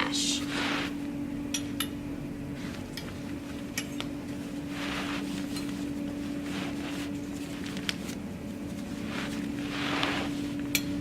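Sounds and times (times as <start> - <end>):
steady hum: 0.0 - 11.0
fabric rustling: 2.6 - 10.7.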